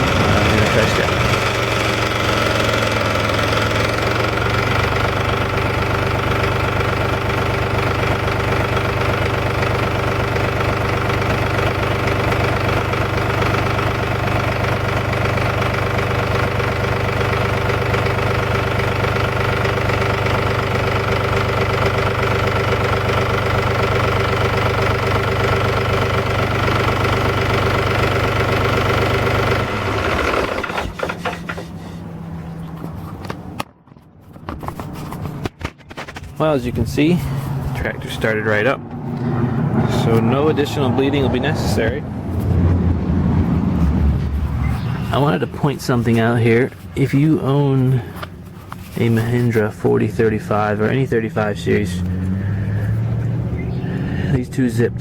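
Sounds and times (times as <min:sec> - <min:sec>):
tractor diesel engine idling: 0:00.0 - 0:33.6, 0:36.4 - 0:42.3, 0:43.9 - 0:55.0.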